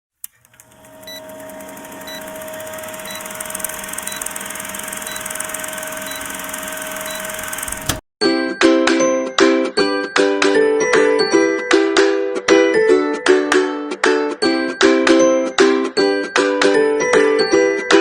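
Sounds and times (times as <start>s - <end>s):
electrical hum: 0.2s - 8.0s.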